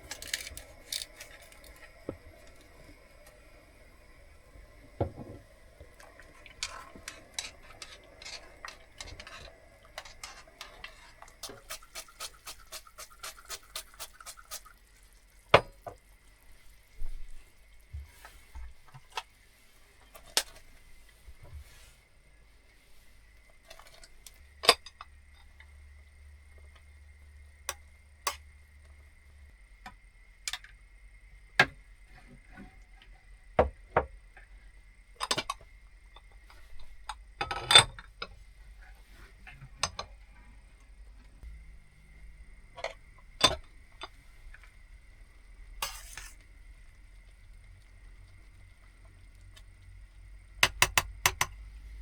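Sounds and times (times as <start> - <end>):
utensils clinking against dishes: 6.6 - 10.8.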